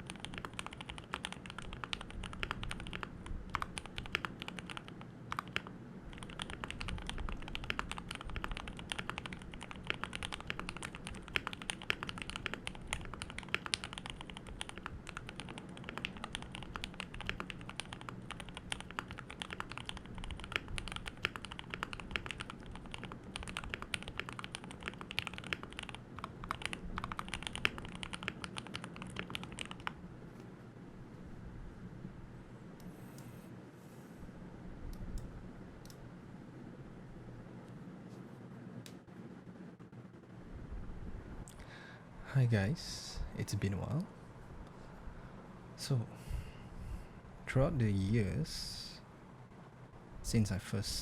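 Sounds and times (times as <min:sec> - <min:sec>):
mechanical keyboard typing: 0:00.0 - 0:30.0.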